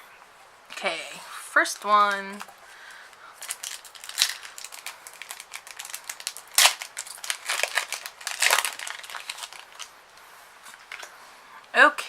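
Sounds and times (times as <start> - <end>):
foil wrapper crinkling: 2.0 - 9.9.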